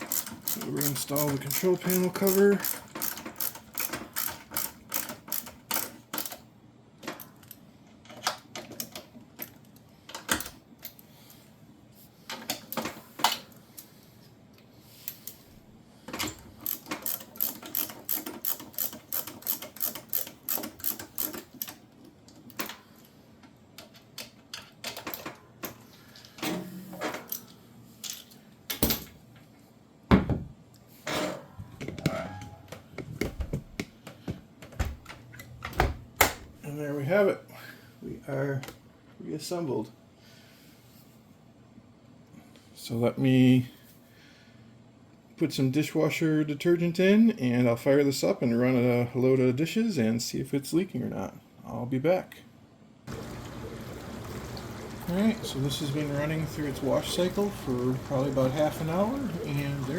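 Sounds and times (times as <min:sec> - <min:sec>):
ratcheting screwdriver clicking: 0:00.0 - 0:06.4, 0:16.6 - 0:21.7.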